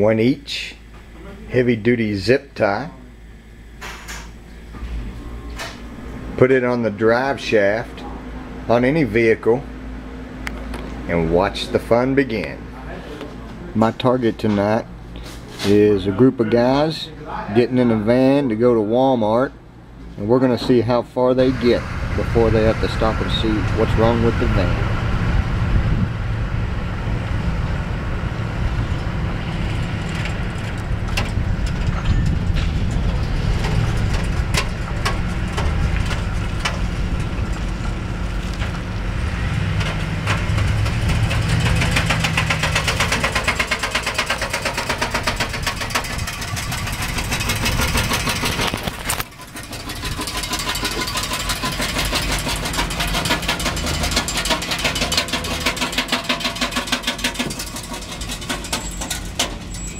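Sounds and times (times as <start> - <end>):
van engine running: 21.4 - 59.9
fast even clacking: 39.6 - 59.9.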